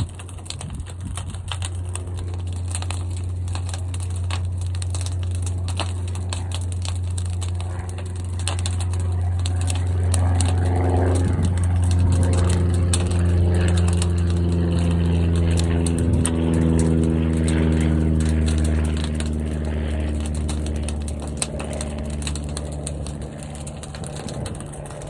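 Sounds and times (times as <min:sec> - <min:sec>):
fire crackles: 0:00.0 - 0:25.0
kiln fire rumbling: 0:00.0 - 0:25.0
steady multi-tone hum: 0:00.0 - 0:25.0.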